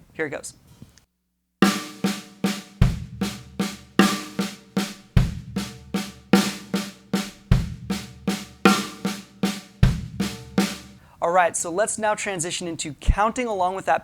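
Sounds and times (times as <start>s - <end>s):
snare drum roll: 1.6s - 11.0s
bass drum kick: 2.7s - 11.0s.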